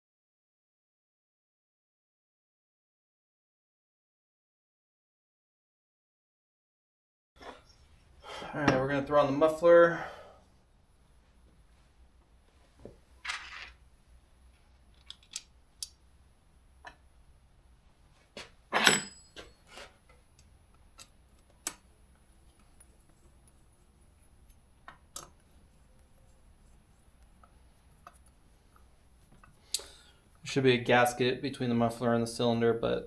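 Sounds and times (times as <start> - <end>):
metal tools clinking: 18.7 - 19.8.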